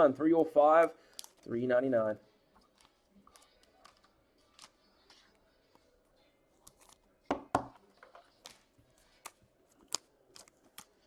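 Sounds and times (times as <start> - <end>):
trading cards rustling: 0.4 - 1.7.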